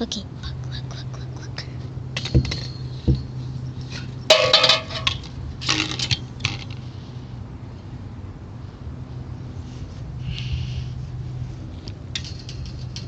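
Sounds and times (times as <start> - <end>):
steady low hum: 0.0 - 13.0
metallic jingling and clinking: 2.2 - 6.6.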